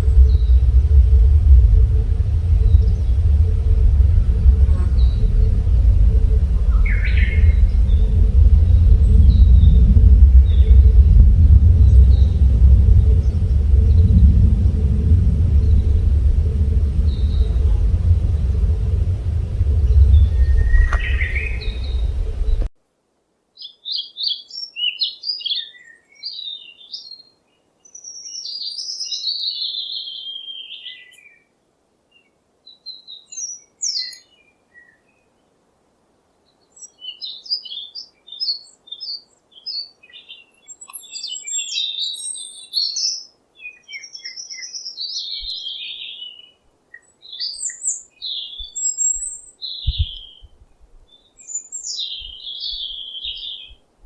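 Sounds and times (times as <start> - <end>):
faint low thumps: 0.0 - 22.7, 49.9 - 51.0
songbirds chirping and singing: 16.1 - 22.7.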